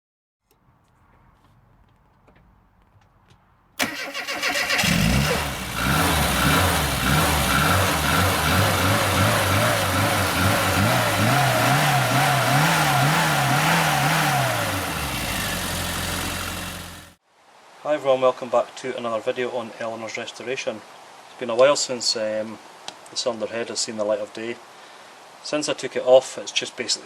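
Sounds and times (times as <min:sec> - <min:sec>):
car engine cranking: 0:03.8 - 0:17.2
car engine revving: 0:03.8 - 0:17.2.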